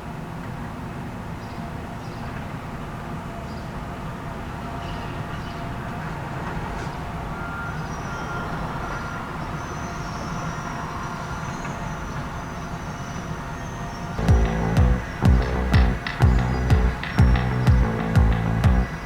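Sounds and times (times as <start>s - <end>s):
excavator diesel engine rumbling: 14.2s - 18.9s
music: 14.2s - 19.0s.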